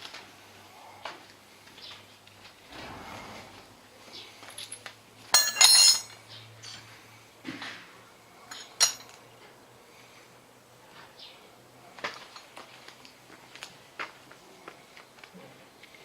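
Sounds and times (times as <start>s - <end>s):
metal parts clinking: 4.5s - 6.2s, 8.5s - 9.2s.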